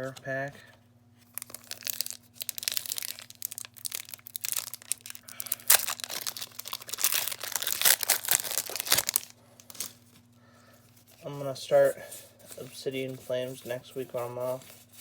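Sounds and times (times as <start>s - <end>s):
cards being handled: 0.0s - 10.3s, 12.1s - 15.0s
foil wrapper crinkling: 0.1s - 10.2s.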